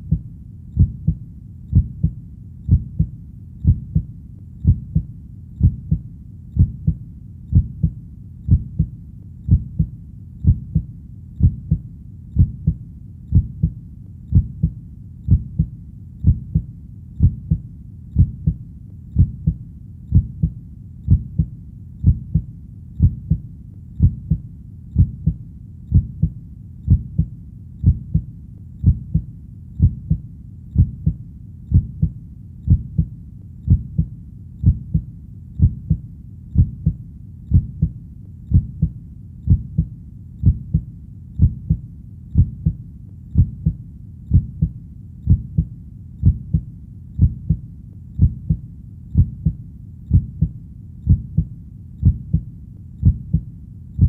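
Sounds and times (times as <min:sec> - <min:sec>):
heartbeat thumping: 0:00.0 - 0:30.2, 0:30.8 - 0:47.6, 0:48.2 - 0:54.0.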